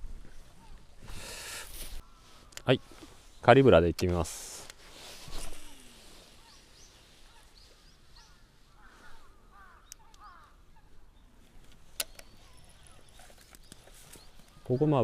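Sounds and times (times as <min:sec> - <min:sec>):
distant bird calls: 0:00.0 - 0:03.5, 0:04.8 - 0:15.0
sharp clicks: 0:11.7 - 0:12.4.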